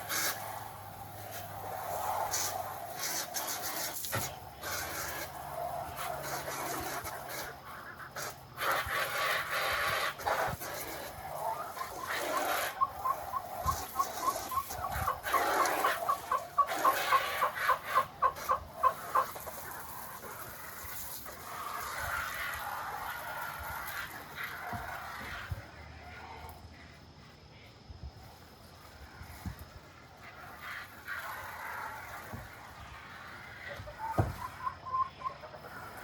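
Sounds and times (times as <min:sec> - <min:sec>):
chickens clucking: 0:01.2 - 0:26.6, 0:30.3 - 0:36.0.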